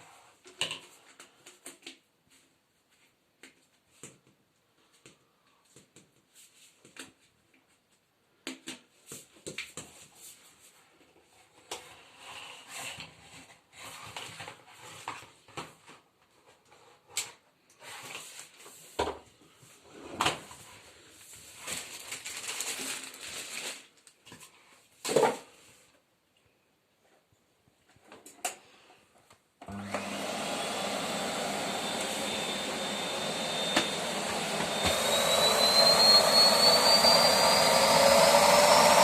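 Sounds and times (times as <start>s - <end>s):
packaging rustling: 21.4s - 24.2s.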